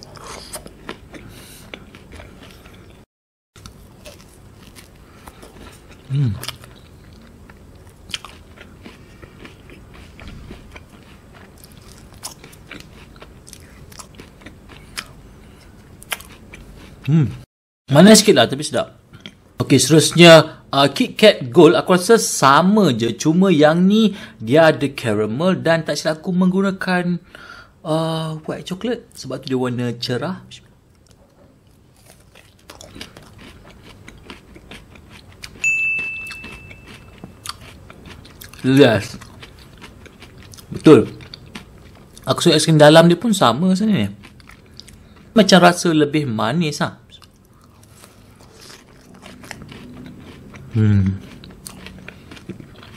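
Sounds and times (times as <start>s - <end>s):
biting and chewing crunchy ice cream bar: 0.0s - 3.0s, 3.6s - 17.4s, 31.0s - 35.6s, 36.3s - 42.5s, 47.1s - 52.9s.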